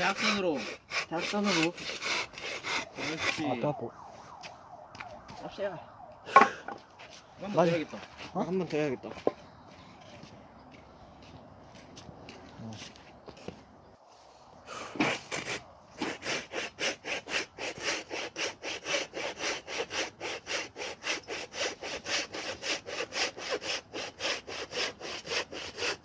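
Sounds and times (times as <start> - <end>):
hand saw cutting log: 0.0 - 3.5, 15.0 - 26.0.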